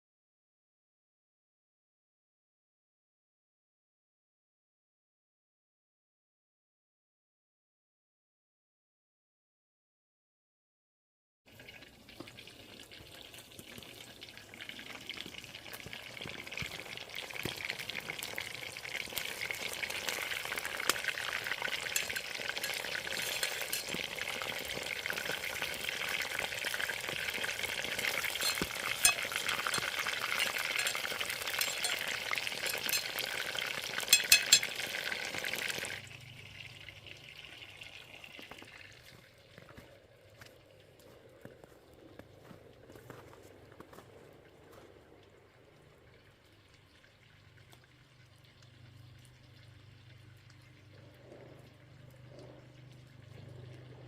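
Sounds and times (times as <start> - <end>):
chicken sizzling in hot oil: 11.5 - 39.2
oil crackles and pops: 11.5 - 54.0.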